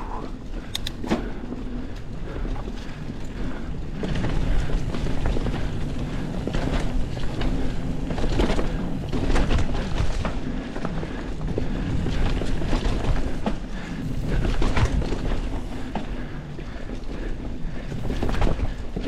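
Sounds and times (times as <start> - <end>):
bike rattling: 0.0 - 19.0
bike tyres rolling: 0.0 - 19.0.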